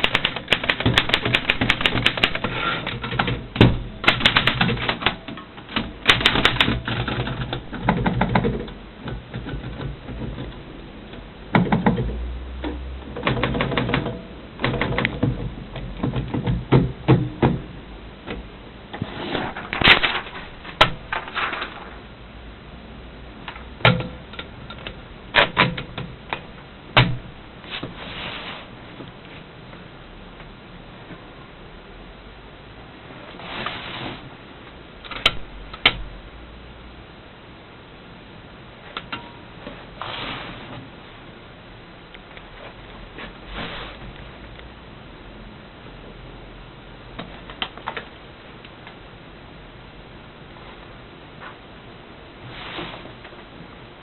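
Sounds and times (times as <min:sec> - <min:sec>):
typewriter key strikes: 0:00.0 - 0:08.7.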